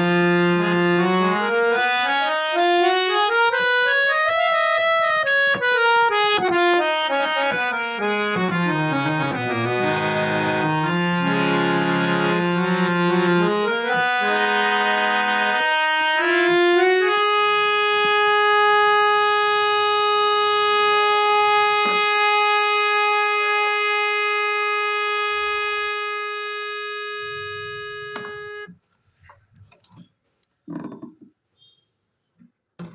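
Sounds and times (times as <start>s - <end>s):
harmonium playing: 0.0s - 28.7s
faint knocks: 28.1s - 31.4s.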